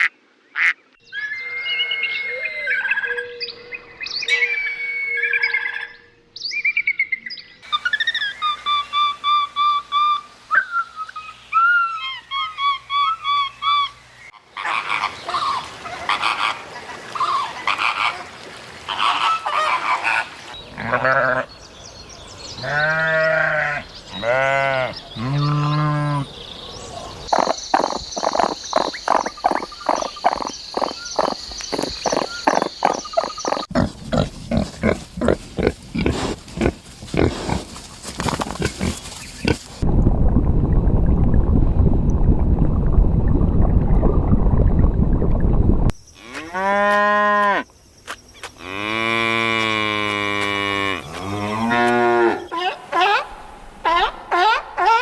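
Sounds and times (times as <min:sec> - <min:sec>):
long arching calls: 0:18.9 - 0:39.7
pulsed animal calls: 0:27.3 - 0:37.8
fast croaking pulses: 0:27.3 - 0:39.8.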